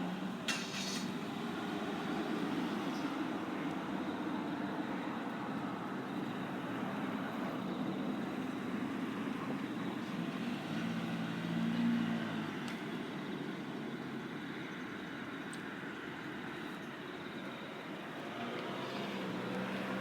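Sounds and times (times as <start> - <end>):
outdoor background noise: 0.0 - 20.0
vehicle engine hum passing: 18.0 - 20.0.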